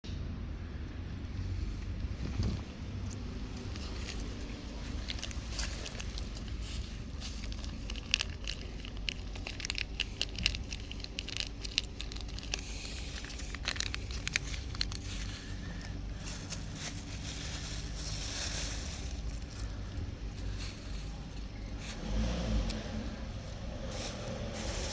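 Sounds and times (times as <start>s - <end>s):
cats crunching food: 1.2s - 24.9s.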